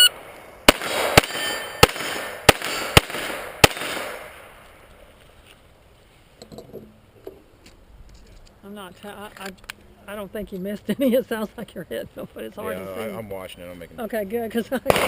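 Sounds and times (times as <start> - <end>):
pistol shots: 0.1 - 4.5
steel plates ringing: 1.3 - 1.8.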